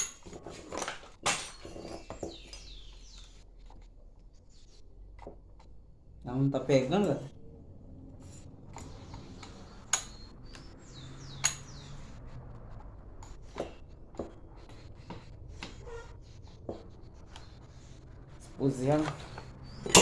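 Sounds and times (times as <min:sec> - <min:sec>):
tools and metal parts clicking: 0:00.0 - 0:03.8, 0:08.2 - 0:10.7, 0:11.4 - 0:12.1, 0:19.0 - 0:20.0
brief squeaks: 0:15.6 - 0:16.4.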